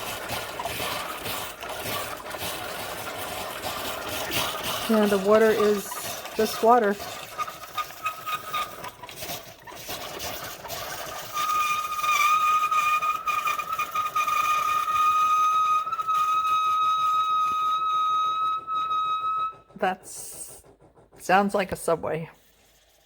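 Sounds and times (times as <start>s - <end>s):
coffee maker hissing and sputtering: 0.0s - 23.0s
loud steady high whistle: 11.3s - 20.6s.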